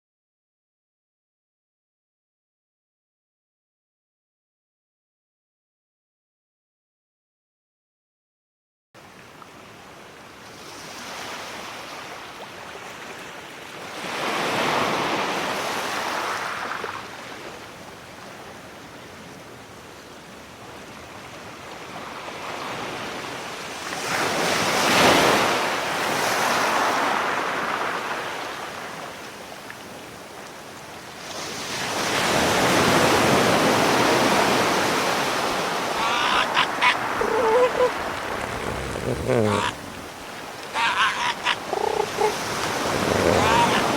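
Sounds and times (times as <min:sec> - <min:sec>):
ocean waves washing in: 0:31.2 - 0:43.9
short pitched animal calls: 0:35.6 - 0:43.9.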